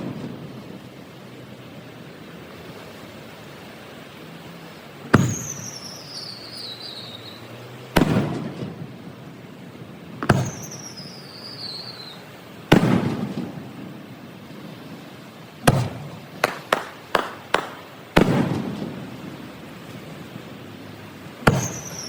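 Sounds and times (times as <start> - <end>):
fireworks bangs with rumbling echo: 5.1 - 5.7, 8.0 - 9.0, 10.2 - 11.0, 12.7 - 14.8, 15.6 - 19.5, 21.4 - 22.0
falling whistle: 10.4 - 12.2, 21.6 - 22.0.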